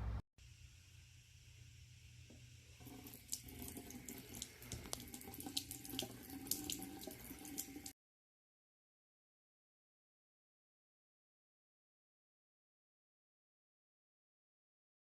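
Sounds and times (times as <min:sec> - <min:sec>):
faucet water trickling into sink: 0:02.3 - 0:08.0
water splashing and dripping: 0:02.8 - 0:08.0.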